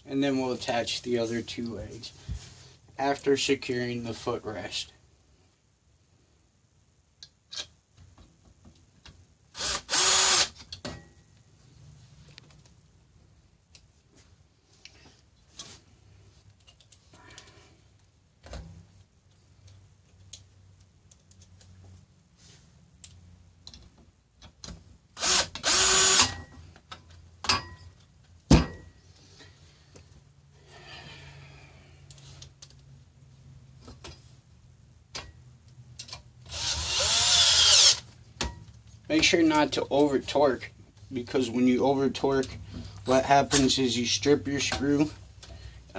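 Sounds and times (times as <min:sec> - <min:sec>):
power drill driving bolt: 0:09.6 - 0:10.6, 0:25.2 - 0:26.4, 0:36.5 - 0:38.0.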